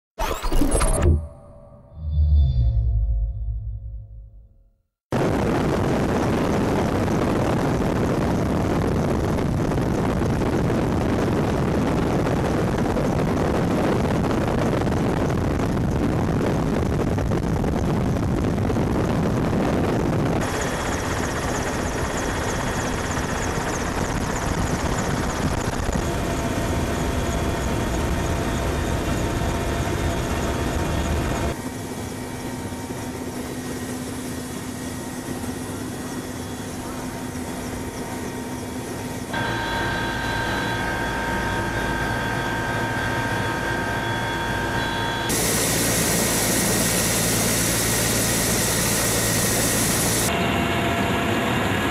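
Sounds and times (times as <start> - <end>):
aircraft-like engine noise: 5.2 - 51.9
steady whining tones: 34.9 - 51.2.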